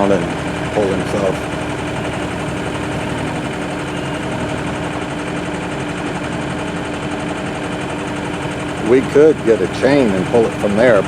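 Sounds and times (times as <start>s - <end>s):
engine running with hum: 0.0s - 11.0s.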